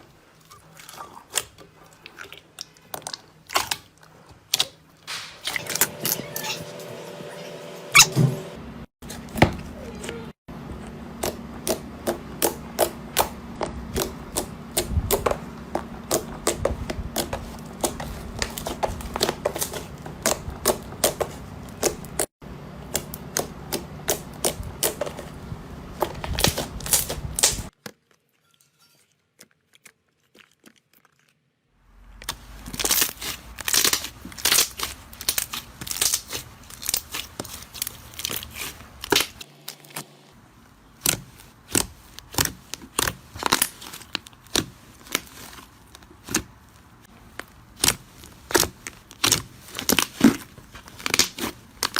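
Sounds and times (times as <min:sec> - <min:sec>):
slime clicking and popping: 0:41.0 - 0:45.2, 0:47.8 - 0:50.4.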